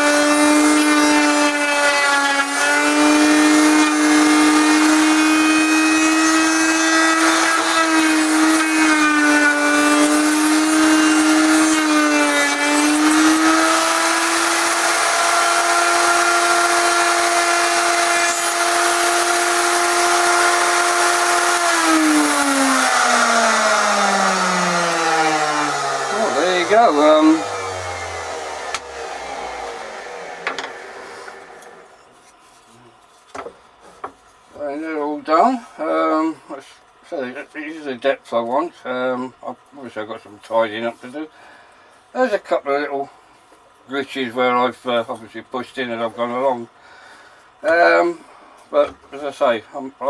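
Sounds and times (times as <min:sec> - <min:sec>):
electric router whining: 0:00.0 - 0:32.0
router spinning down: 0:10.0 - 0:32.0.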